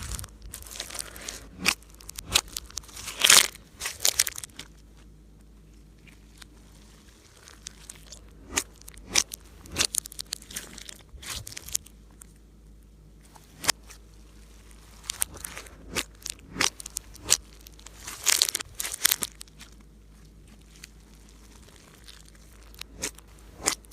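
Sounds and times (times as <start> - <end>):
slime crackling: 0.0 - 5.0, 6.0 - 12.4, 13.3 - 23.9.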